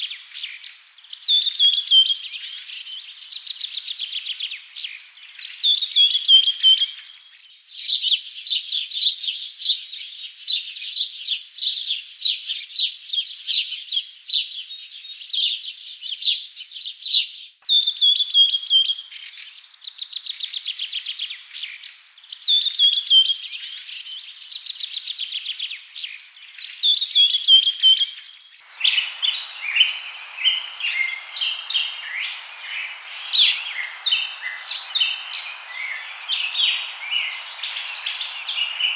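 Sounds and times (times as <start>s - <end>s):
background hiss: 0.0s - 38.9s
songbird chirps and trills: 17.6s - 38.9s.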